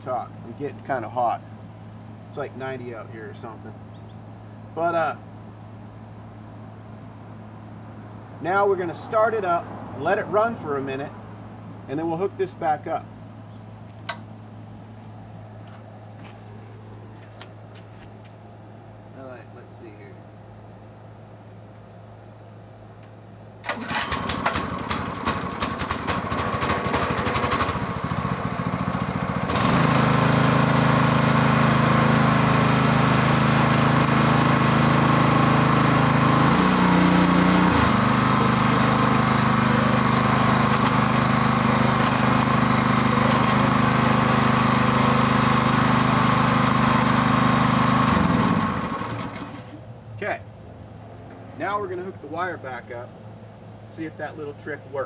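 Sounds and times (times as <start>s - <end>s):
small gas engine running: 23.6s - 49.8s.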